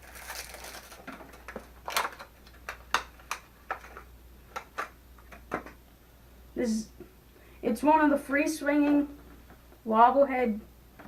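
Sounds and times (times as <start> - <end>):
plastic packaging clicks and snaps: 0.0 - 5.8.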